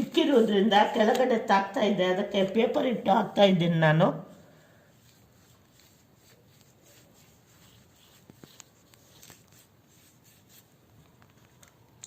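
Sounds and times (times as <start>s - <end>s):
paintbrush rubbing: 4.2s - 10.9s.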